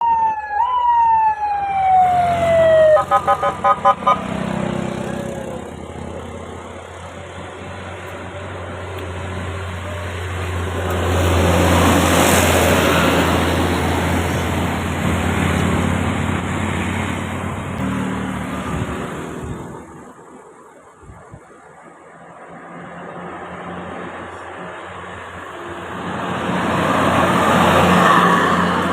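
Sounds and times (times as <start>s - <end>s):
bus engine passing: 0.8s - 28.9s
musical air horn: 3.0s - 4.5s.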